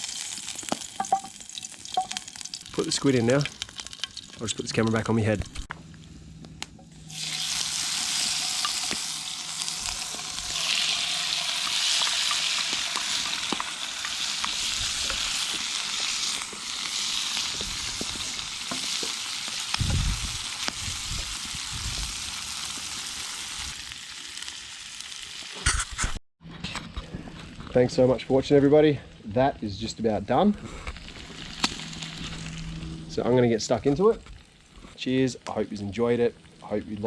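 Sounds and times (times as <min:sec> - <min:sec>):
squid sizzling in a pan: 0:00.0 - 0:04.4, 0:07.0 - 0:25.6, 0:31.0 - 0:32.6
sharp frying pops: 0:00.0 - 0:05.7, 0:06.5 - 0:24.6, 0:31.0 - 0:32.5.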